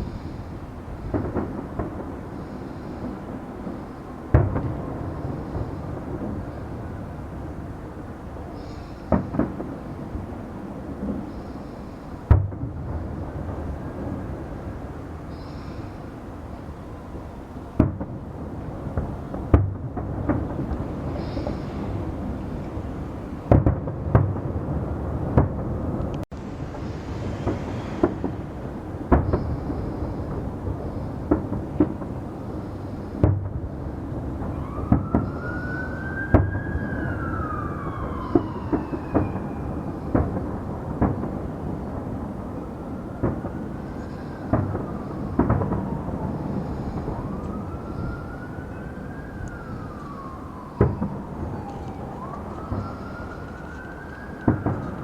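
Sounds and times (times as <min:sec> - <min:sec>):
fireworks bangs: 0:00.0 - 0:16.2, 0:17.0 - 0:55.0
constant rumble: 0:00.0 - 0:35.4
emergency siren wailing: 0:00.0 - 0:55.0.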